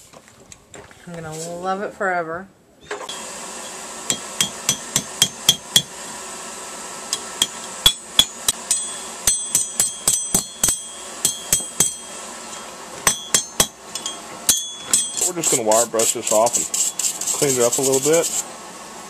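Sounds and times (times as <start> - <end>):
steady hiss: 3.1 - 19.0
hammer striking steel on anvil: 4.1 - 6.0, 7.1 - 15.6.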